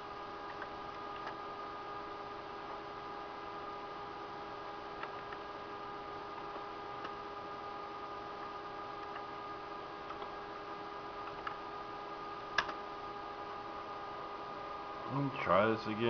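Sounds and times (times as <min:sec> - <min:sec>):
electrical hum: 0:00.0 - 0:16.0.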